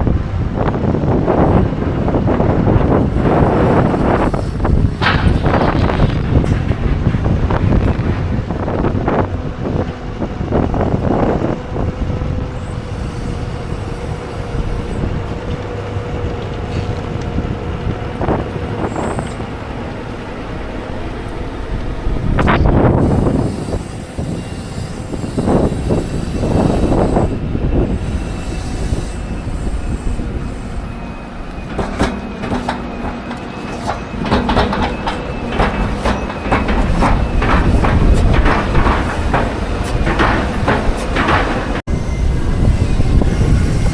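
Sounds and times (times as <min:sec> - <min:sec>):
metal clanks and squeals: 0:03.3 - 0:09.3, 0:18.2 - 0:43.9.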